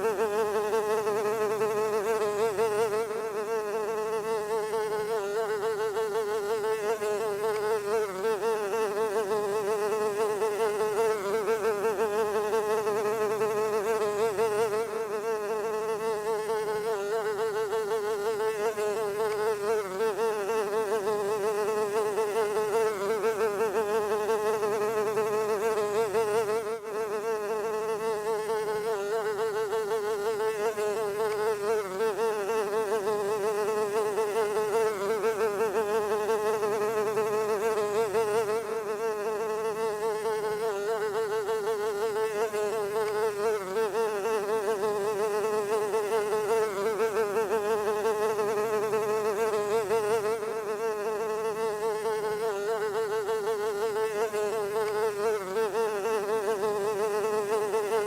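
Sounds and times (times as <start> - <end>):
housefly buzzing: 0.0 - 58.0.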